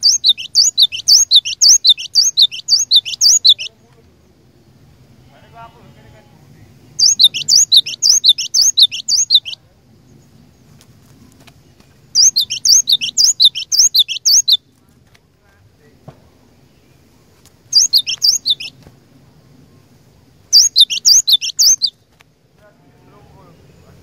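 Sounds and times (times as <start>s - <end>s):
bird singing high rapid notes: 0.0s - 3.8s, 6.9s - 9.6s, 12.1s - 14.6s, 17.7s - 18.8s, 20.5s - 22.0s.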